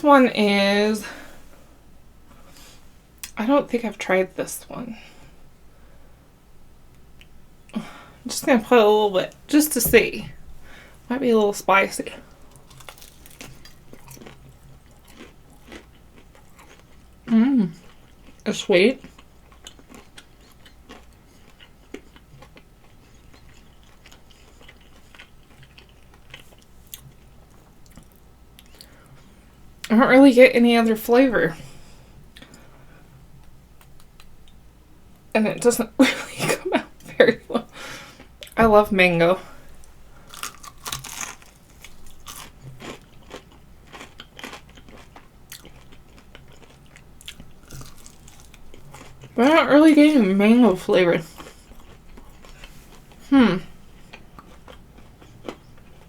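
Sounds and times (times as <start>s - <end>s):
person chewing and crunching: 12.2s - 29.0s, 39.7s - 49.5s, 50.8s - 56.0s
chewing and wet mouth clicks: 40.4s - 49.3s.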